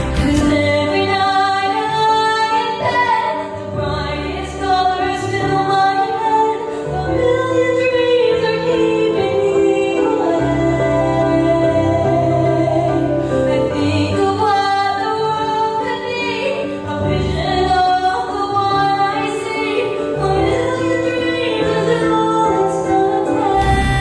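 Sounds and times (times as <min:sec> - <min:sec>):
instrumental backing: 0:00.0 - 0:07.4.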